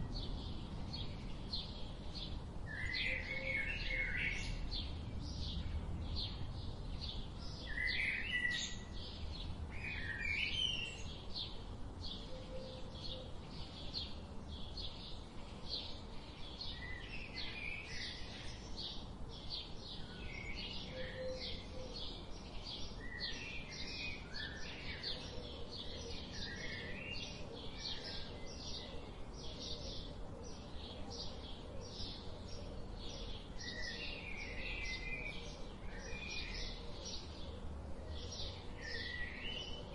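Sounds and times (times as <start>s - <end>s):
faint low rumble: 0.0s - 10.2s
songbirds chirping: 0.0s - 39.9s.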